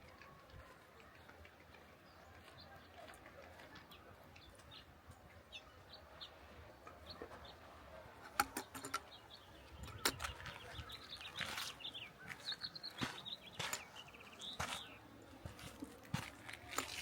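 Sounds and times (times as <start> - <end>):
footsteps on trail: 0.0 - 5.4, 9.4 - 17.0
small birds chirping: 0.0 - 17.0.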